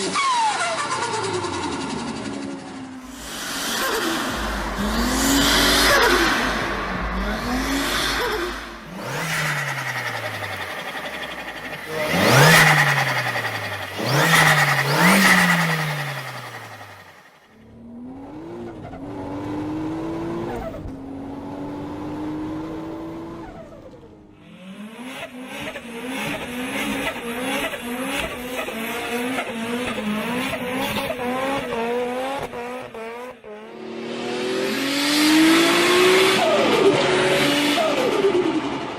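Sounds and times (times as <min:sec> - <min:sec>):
turbocharged car engines revving: 0:00.0 - 0:38.9
turbo chattering flutter: 0:03.0 - 0:17.5.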